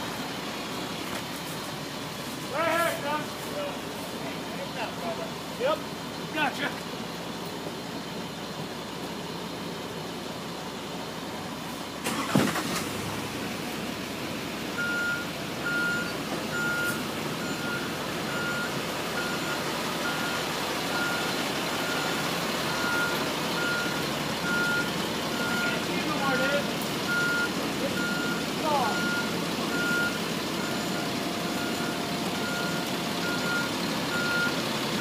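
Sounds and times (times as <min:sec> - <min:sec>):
truck engine running: 0:00.0 - 0:35.0
reversing alarm beeping: 0:14.8 - 0:35.0.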